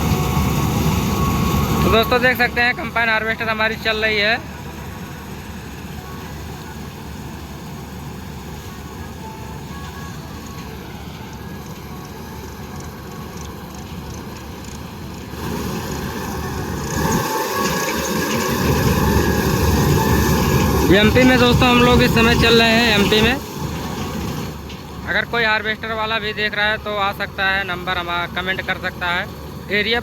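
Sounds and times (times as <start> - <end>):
combine harvester running: 0.0 - 30.0.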